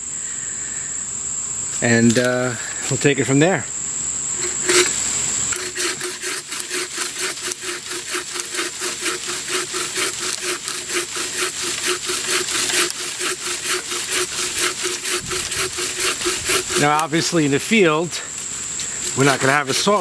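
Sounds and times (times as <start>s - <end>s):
high insect drone: 0.0s - 20.0s
hand saw cutting wood: 4.4s - 20.0s.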